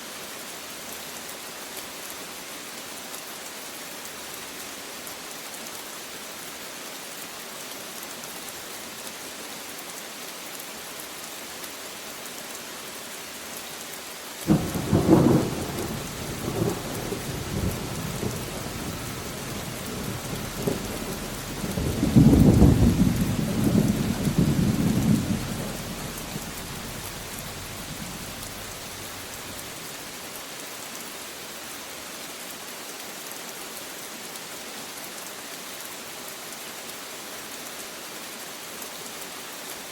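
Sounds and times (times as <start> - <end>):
steady rain falling: 0.0 - 39.9
thunder crack and rumble: 14.5 - 29.6.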